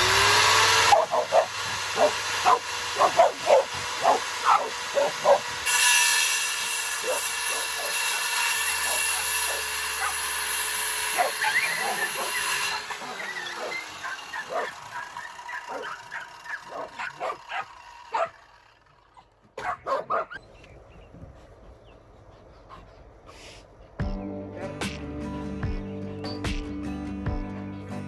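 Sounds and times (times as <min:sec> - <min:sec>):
power saw cutting a board: 0:00.0 - 0:19.2
dog barking: 0:00.9 - 0:05.6, 0:07.0 - 0:08.0, 0:08.8 - 0:10.2, 0:11.2 - 0:12.4, 0:13.1 - 0:18.4, 0:19.1 - 0:20.4.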